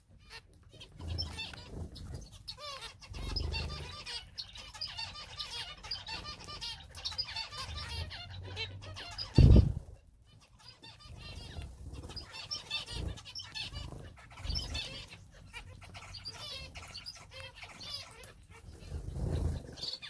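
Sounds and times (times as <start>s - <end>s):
finches and canaries chirping: 0.0s - 20.0s
wing flutters: 9.2s - 10.0s.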